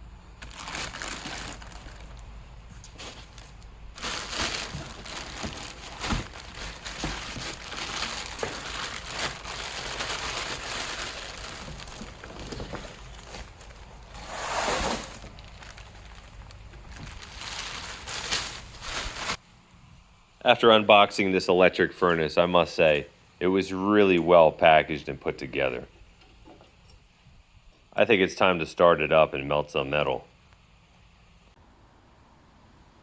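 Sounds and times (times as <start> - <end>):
wrapping crinkling and rustling: 0.4 - 19.4
handling knocks and bumps: 4.0 - 10.2.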